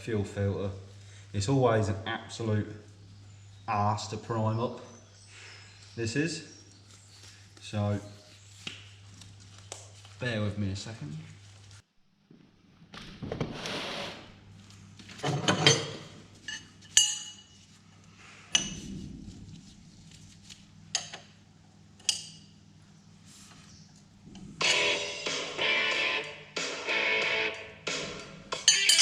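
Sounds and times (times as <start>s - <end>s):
rustling handling sounds: 5.7s - 11.9s, 16.2s - 21.1s, 23.2s - 24.2s
guitar music: 24.6s - 28.7s
tools and metal parts clinking: 28.6s - 29.0s.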